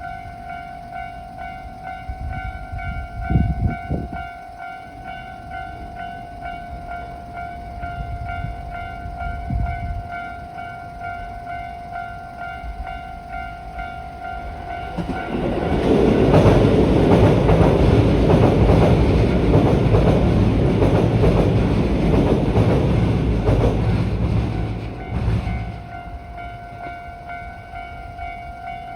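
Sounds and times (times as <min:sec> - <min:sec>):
low rumbles: 0:14.4 - 0:26.4.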